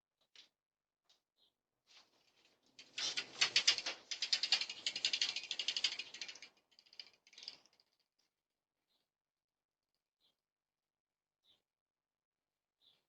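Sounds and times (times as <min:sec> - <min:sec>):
rapid rattling clicks: 0:02.8 - 0:07.9.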